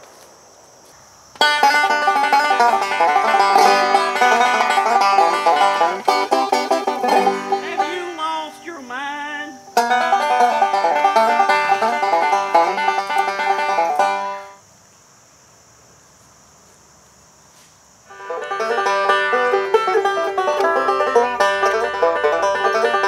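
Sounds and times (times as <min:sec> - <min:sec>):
banjo picking bluegrass tune: 0:01.4 - 0:14.6, 0:18.1 - 0:23.0.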